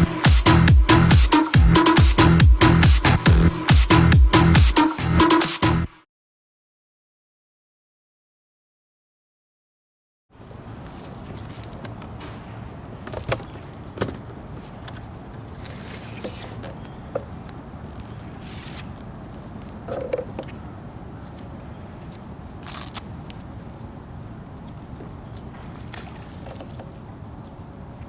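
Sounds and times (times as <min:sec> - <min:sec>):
insect buzz: 0:10.4 - 0:28.0.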